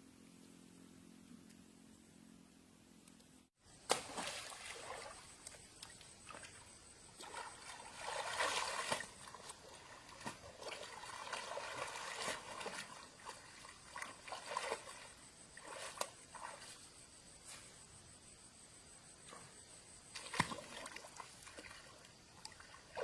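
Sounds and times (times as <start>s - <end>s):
water splashing and sloshing: 3.7s - 17.4s, 19.2s - 23.0s.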